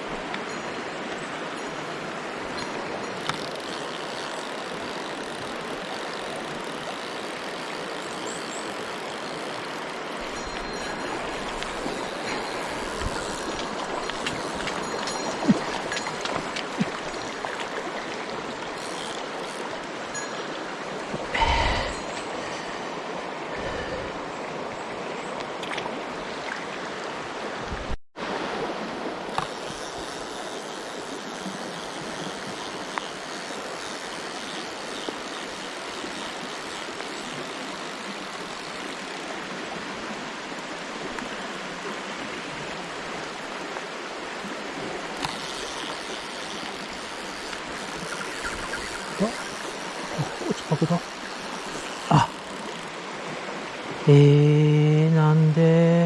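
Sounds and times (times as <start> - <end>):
water rushing over rocks: 8.8 - 24.8, 34.8 - 55.6.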